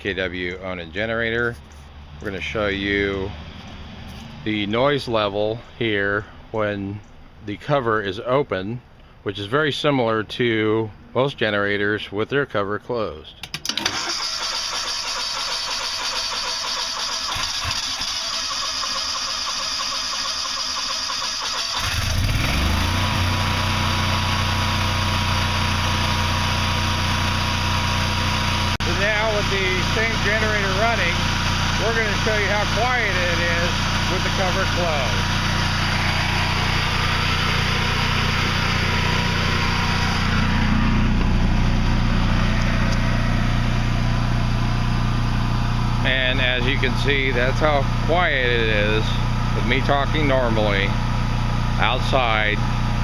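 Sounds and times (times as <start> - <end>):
generator engine running: 13.5 - 53.0.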